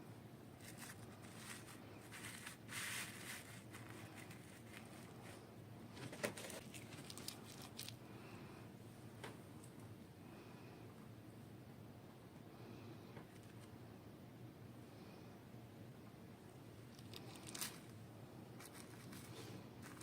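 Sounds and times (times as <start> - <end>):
toy packaging crinkling: 0.6 - 5.4, 6.0 - 8.0, 17.0 - 18.0, 18.6 - 20.0.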